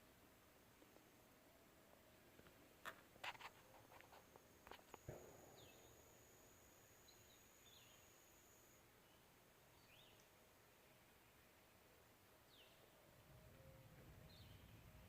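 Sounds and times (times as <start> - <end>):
faint chirps: 3.9 - 11.4.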